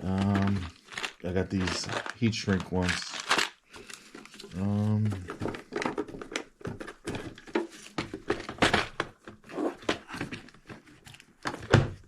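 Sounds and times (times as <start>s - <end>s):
rummaging clicks and rattles: 5.0s - 12.0s.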